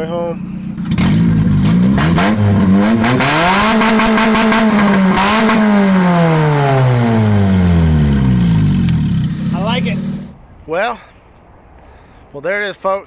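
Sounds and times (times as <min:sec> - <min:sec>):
car engine revving: 0:00.4 - 0:10.4.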